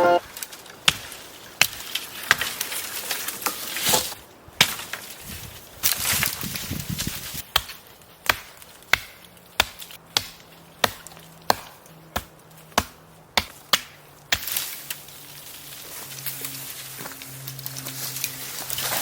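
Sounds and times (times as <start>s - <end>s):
axe chopping wood: 7.4s - 14.6s.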